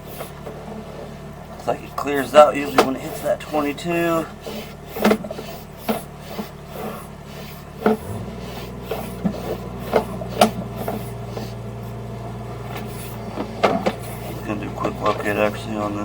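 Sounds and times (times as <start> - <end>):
cable rubbing and scraping: 0.0 - 16.0
steady low hum: 0.0 - 16.0
sharp knocks and clicks: 2.6 - 3.1, 4.4 - 7.0, 7.8 - 11.6, 12.7 - 15.6.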